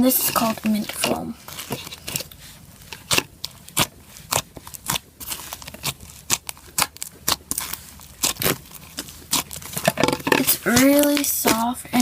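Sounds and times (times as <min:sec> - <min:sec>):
foam slime crackling and popping: 0:00.0 - 0:12.0.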